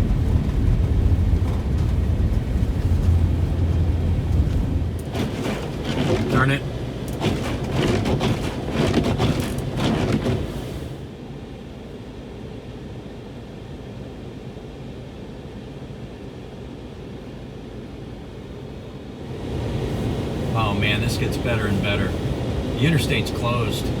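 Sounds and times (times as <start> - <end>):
knocks and bumps: 0.0 - 10.6
vehicle cabin rumble: 0.0 - 11.1, 19.2 - 24.0.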